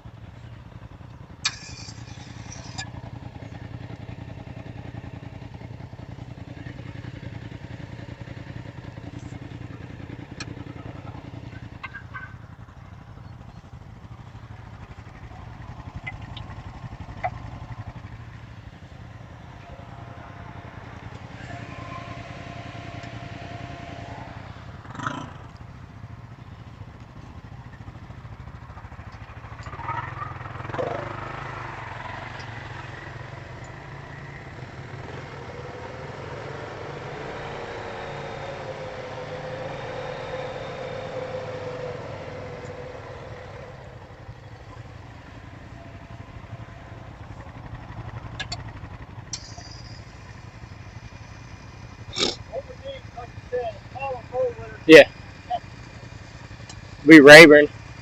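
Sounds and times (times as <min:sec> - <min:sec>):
atv engines running: 0:00.0 - 0:58.0
engine note rising and falling: 0:19.0 - 0:25.7, 0:29.6 - 0:49.8.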